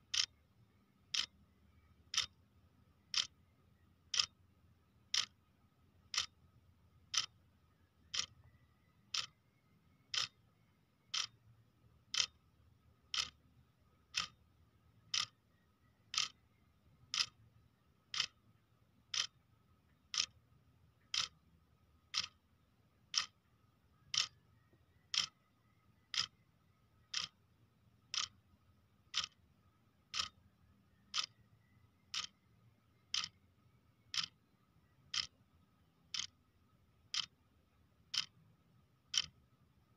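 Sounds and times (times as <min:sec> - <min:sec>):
clock ticking: 0:00.0 - 0:00.4, 0:01.0 - 0:02.4, 0:03.0 - 0:03.4, 0:04.0 - 0:04.4, 0:05.1 - 0:05.4, 0:06.1 - 0:06.4, 0:07.1 - 0:07.3, 0:08.0 - 0:08.4, 0:09.1 - 0:09.4, 0:10.0 - 0:10.4, 0:11.0 - 0:11.4, 0:12.1 - 0:12.4, 0:13.0 - 0:13.4, 0:14.0 - 0:14.4, 0:15.0 - 0:15.4, 0:16.1 - 0:16.4, 0:17.1 - 0:17.4, 0:18.1 - 0:18.4, 0:19.1 - 0:19.4, 0:20.0 - 0:20.4, 0:21.1 - 0:21.4, 0:22.1 - 0:22.4, 0:23.1 - 0:23.4, 0:24.0 - 0:24.4, 0:25.1 - 0:25.4, 0:26.0 - 0:26.4, 0:27.0 - 0:27.4, 0:28.1 - 0:28.4, 0:29.1 - 0:29.4, 0:30.1 - 0:30.4, 0:31.1 - 0:31.4, 0:32.1 - 0:33.4, 0:34.1 - 0:34.5, 0:35.1 - 0:35.4, 0:36.1 - 0:36.4, 0:37.1 - 0:37.4, 0:38.1 - 0:38.4, 0:39.0 - 0:39.5.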